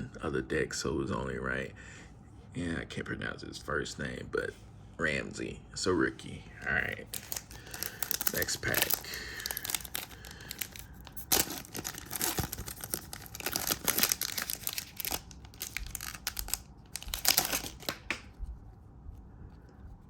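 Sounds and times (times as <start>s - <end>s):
wrapper tearing and crinkling: 6.9s - 18.4s.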